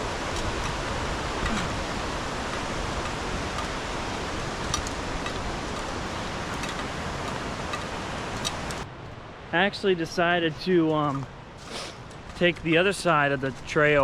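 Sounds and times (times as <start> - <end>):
waterfall rushing: 0.0 - 8.8.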